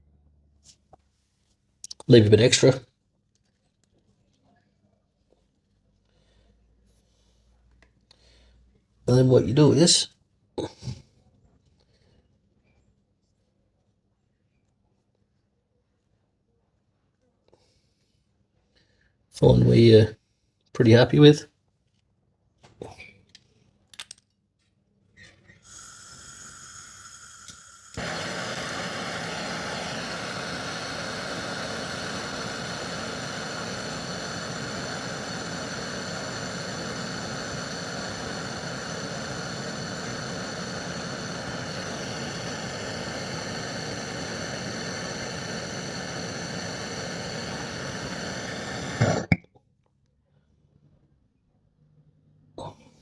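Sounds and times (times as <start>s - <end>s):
torch flame hissing: 25.5s - 49.4s.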